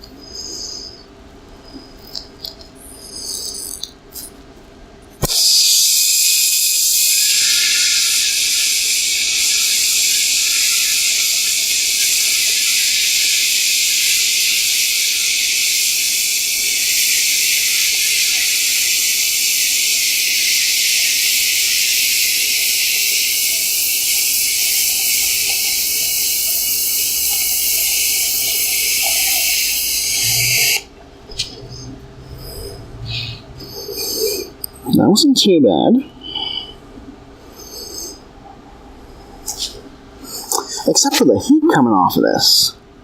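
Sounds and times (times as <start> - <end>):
welding arc hissing: 2.0 - 4.3, 5.2 - 31.8.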